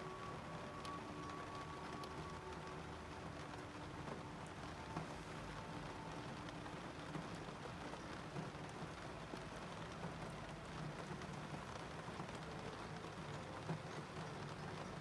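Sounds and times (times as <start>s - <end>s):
rain pattering on a car: 0.0s - 15.0s.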